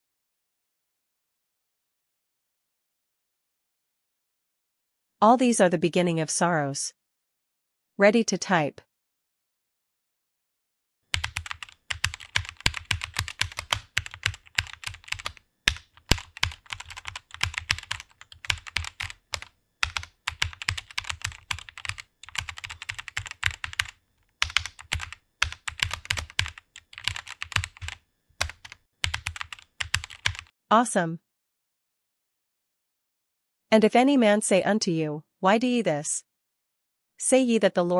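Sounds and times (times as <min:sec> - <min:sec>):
keyboard typing clicks: 0:11.1 - 0:30.5.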